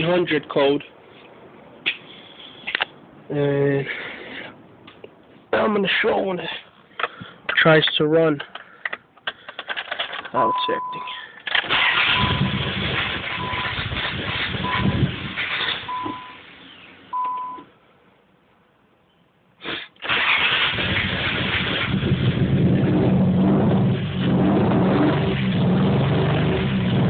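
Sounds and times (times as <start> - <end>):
dashboard chime beeping: 10.4 - 11.2
engine cranking: 11.5 - 16.0, 20.0 - 22.8.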